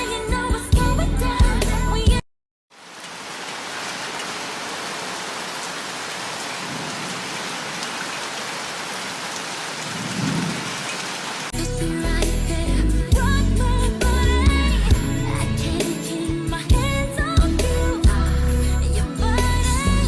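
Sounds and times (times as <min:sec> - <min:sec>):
steady rain falling: 0:02.7 - 0:11.6.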